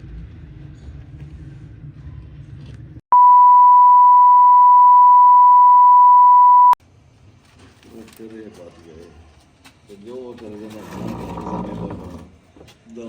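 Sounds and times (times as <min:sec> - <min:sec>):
censor beep: 0:03.1 - 0:06.8.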